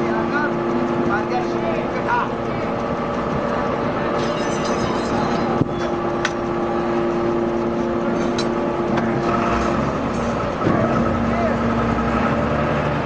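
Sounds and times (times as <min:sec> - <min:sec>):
metal clank: 0:04.1 - 0:06.4.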